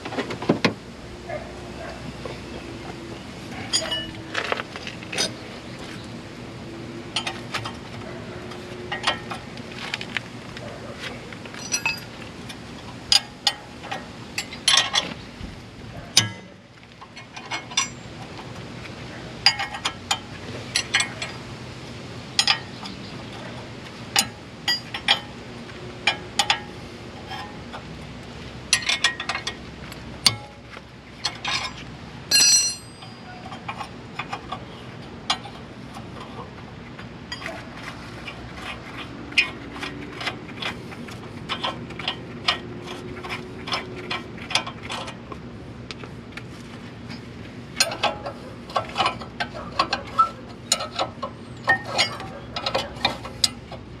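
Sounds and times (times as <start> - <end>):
ringing metal clink: 3.7 - 4.2, 11.6 - 12.1, 32.3 - 33.4.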